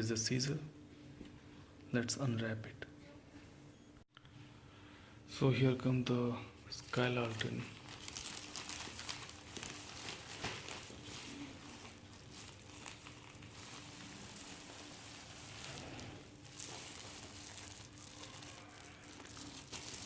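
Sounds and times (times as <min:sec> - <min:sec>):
paper crinkling and rustling: 0:06.8 - 0:20.0.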